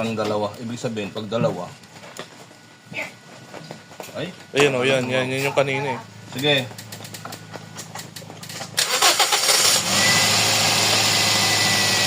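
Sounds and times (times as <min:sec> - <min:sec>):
starter cranking engine: 0:08.0 - 0:12.0.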